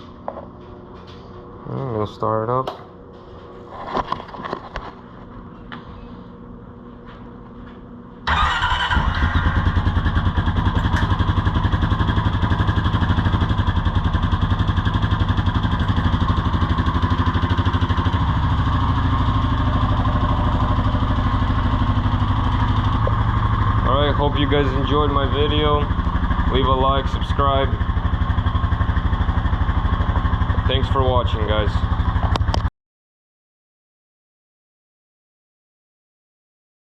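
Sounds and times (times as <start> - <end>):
atv engine running: 8.3 - 32.7.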